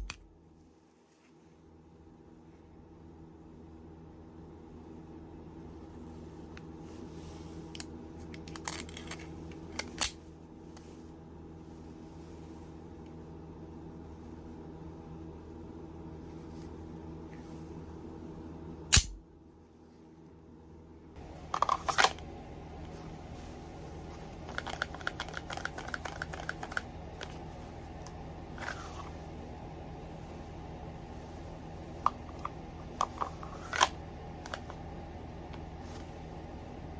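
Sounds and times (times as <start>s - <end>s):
steady low hum: 0.0s - 36.9s
mechanical clicks and snaps: 7.8s - 10.2s, 18.9s - 19.2s.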